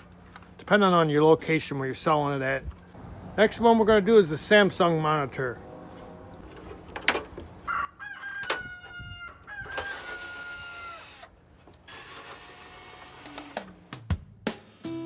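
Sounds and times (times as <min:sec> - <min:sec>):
rooster crowing: 0:07.6 - 0:11.1.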